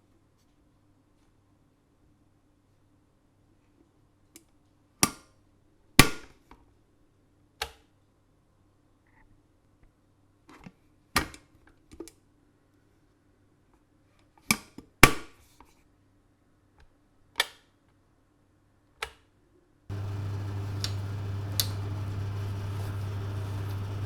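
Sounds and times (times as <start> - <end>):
extractor fan humming: 19.9 - 24.0.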